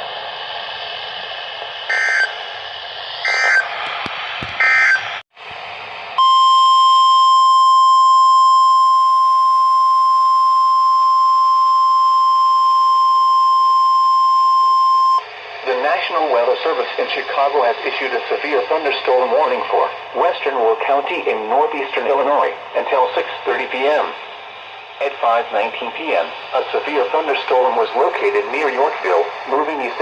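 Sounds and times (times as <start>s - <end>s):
steady warning alarm tone: 1.9s - 2.4s, 3.2s - 3.7s, 4.6s - 5.1s, 6.2s - 15.2s.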